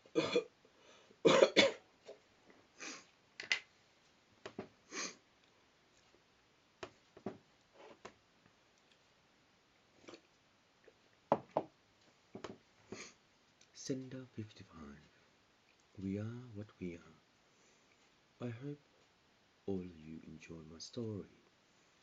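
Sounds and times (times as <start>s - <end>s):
person clearing throat: 0.1s - 0.5s, 1.3s - 1.8s
person coughing: 0.1s - 0.5s, 1.2s - 2.2s.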